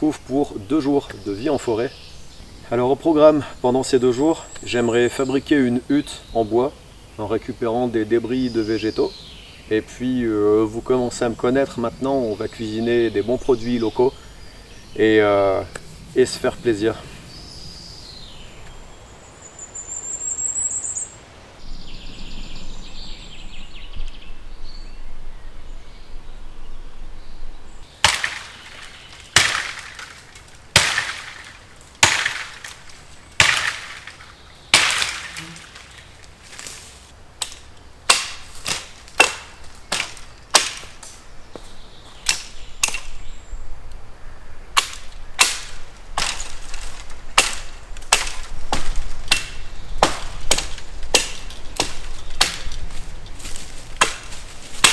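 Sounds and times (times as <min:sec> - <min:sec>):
axe chopping wood: 0:28.0 - 0:43.3, 0:44.8 - 0:54.9.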